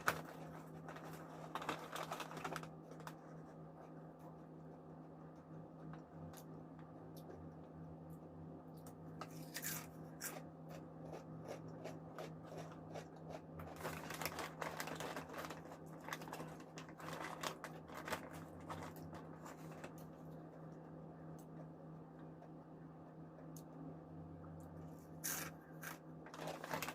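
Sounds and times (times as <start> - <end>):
crunchy chips being chewed: 8.8 - 20.0, 25.2 - 26.9.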